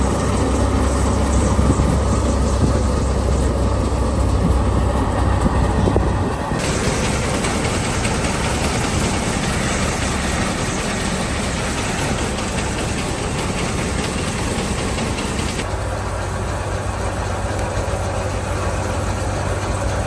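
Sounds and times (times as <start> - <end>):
farm machine engine running: 0.0 - 20.0.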